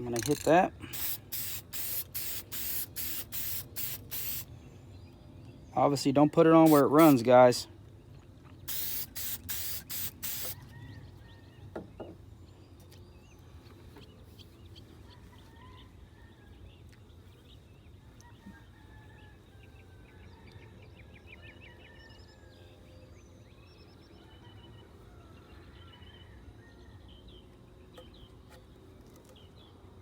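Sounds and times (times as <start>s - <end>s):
aerosol can hissing: 0.2s - 4.5s, 6.6s - 7.2s, 8.7s - 10.6s.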